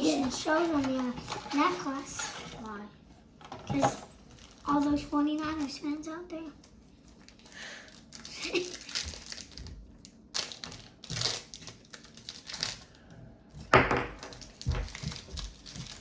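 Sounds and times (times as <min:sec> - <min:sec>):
foil wrapper crinkling: 0:04.2 - 0:05.8, 0:06.7 - 0:13.1, 0:14.2 - 0:16.0.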